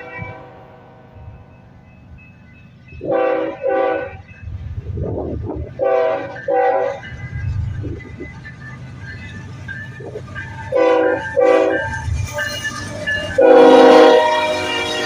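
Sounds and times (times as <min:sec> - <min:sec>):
locomotive air horn blasts: 0:00.0 - 0:01.0, 0:03.0 - 0:04.2, 0:05.8 - 0:07.0, 0:10.7 - 0:11.9, 0:13.3 - 0:15.0
train rumbling: 0:00.0 - 0:15.0.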